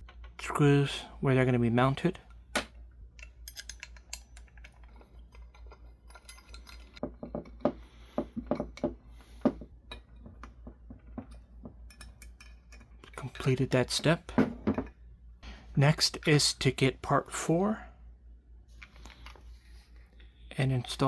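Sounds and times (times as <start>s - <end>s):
metallic clicks of screws: 3.2s - 7.6s.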